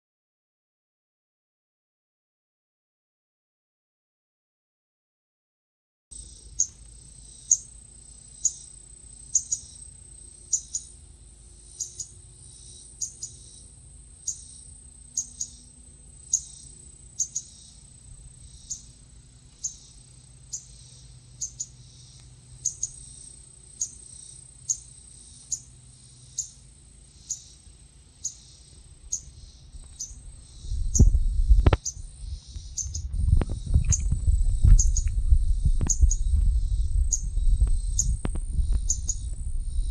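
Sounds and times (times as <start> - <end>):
insects droning: 6.2 - 39.9
songbird chirping: 6.2 - 39.9
loud low rumbling: 29.6 - 39.9.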